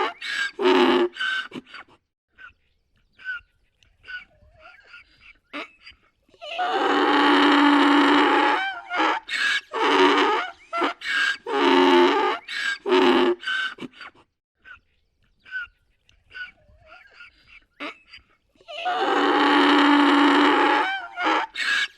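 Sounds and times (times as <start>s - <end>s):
donkey braying: 0.0s - 1.8s, 6.4s - 14.1s, 18.6s - 21.9s.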